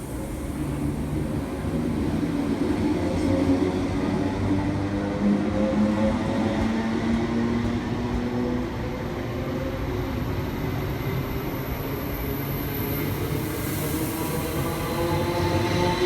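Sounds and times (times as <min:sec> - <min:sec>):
electric train low rumble: 0:00.0 - 0:16.0.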